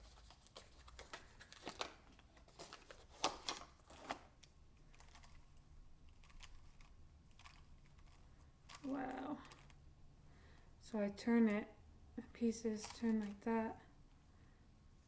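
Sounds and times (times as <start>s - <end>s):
plastic puzzle clicking and rustling: 0.0s - 9.8s, 12.7s - 13.5s.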